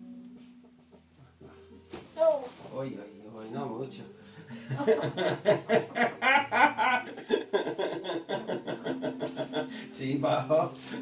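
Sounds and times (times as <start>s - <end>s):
person laughing: 4.7s - 9.7s.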